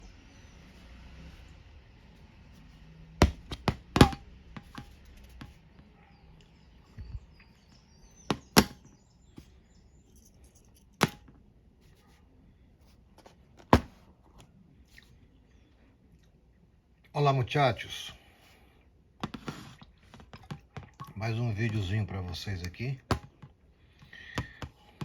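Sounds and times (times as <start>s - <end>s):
hard objects clicking and knocking: 3.2s - 5.5s.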